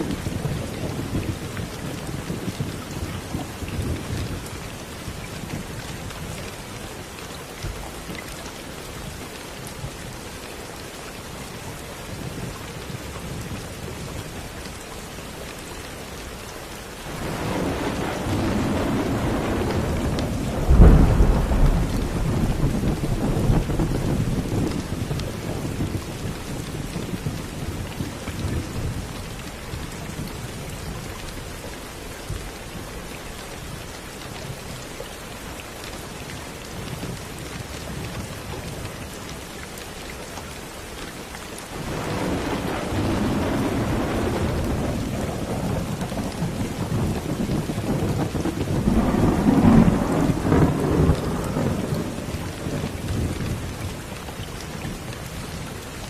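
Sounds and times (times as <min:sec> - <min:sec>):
steady rain falling: 0:00.0 - 0:56.0
thunder rumbling: 0:17.1 - 0:27.6, 0:41.7 - 0:54.0.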